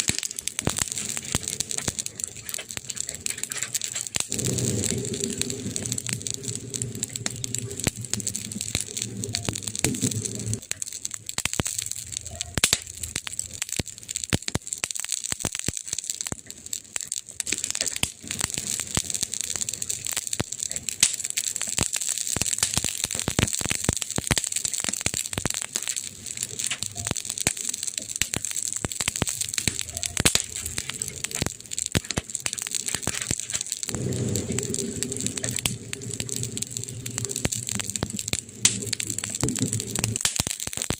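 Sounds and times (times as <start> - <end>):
campfire crackling and popping: 0.0 - 40.9
steady hiss of fire: 0.0 - 40.9
low steady hum: 33.9 - 40.2.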